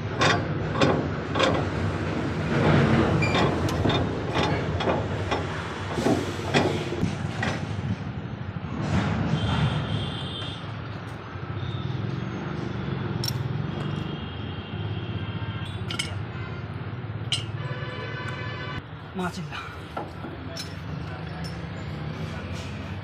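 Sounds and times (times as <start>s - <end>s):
tools striking metal: 0.0s - 1.8s, 13.2s - 13.9s, 15.7s - 16.3s, 17.3s - 17.6s, 20.0s - 21.8s.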